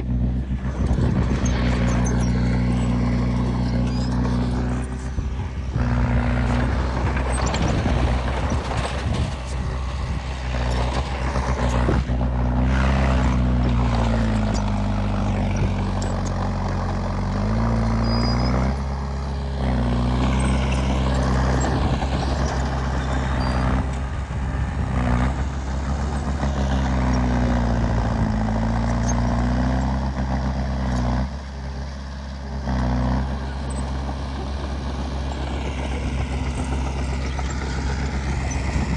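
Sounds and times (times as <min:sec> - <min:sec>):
heavy diesel engine working hard: 0:00.0 - 0:38.9.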